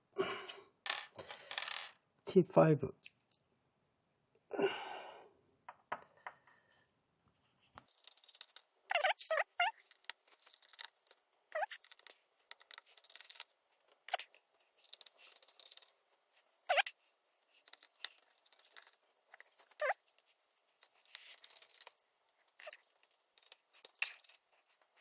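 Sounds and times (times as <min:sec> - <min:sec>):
screwdriver clicks and scrapes: 0:14.1 - 0:25.0.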